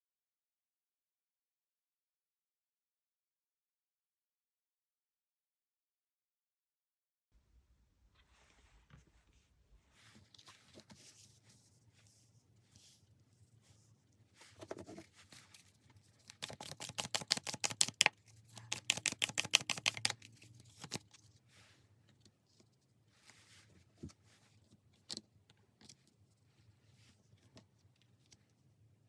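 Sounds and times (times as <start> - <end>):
cards shuffling: 14.4 - 21.3.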